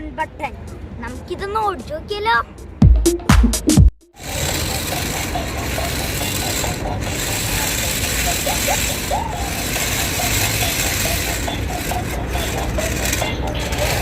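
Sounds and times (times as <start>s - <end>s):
toy car motor whirring: 4.2s - 14.0s.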